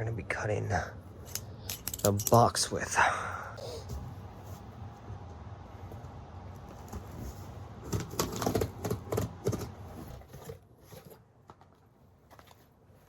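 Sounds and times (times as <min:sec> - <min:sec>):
knife and cardboard box rattling: 0:07.9 - 0:11.2.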